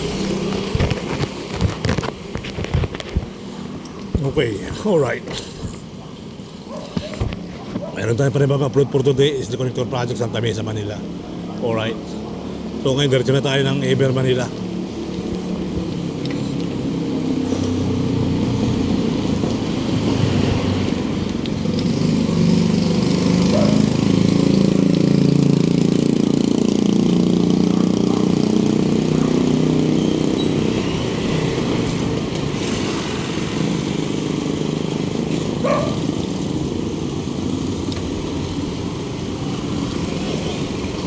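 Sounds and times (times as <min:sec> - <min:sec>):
vehicle engine running close by: 0:00.0 - 0:04.2, 0:10.9 - 0:41.0
steady traffic rumble: 0:00.0 - 0:41.0.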